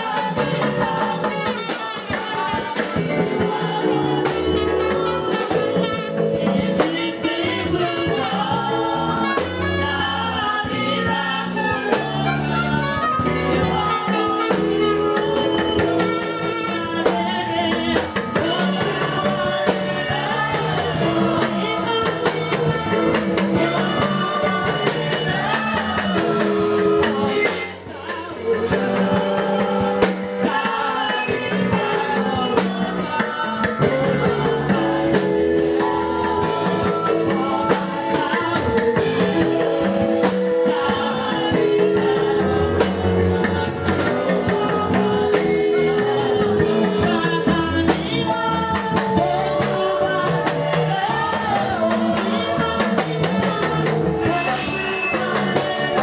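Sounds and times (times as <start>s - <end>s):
gospel band with drum kit: 0.0s - 56.0s
people singing: 0.0s - 56.0s
high-pitched tone: 53.8s - 56.0s.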